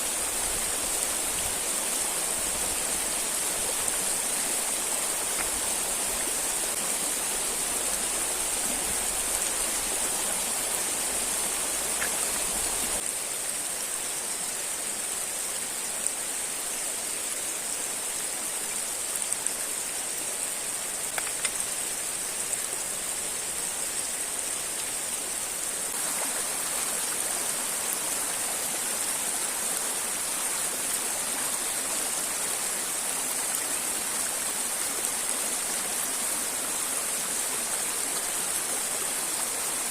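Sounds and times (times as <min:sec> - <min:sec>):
waterfall and river rushing: 0:00.0 - 0:39.9
faint ticks: 0:11.9 - 0:12.2.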